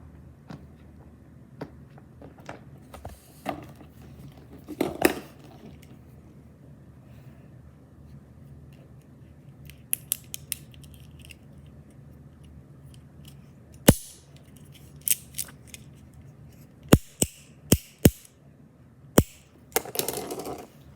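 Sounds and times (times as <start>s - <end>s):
fidget toys clicking and snapping: 9.6s - 11.4s, 17.0s - 18.3s.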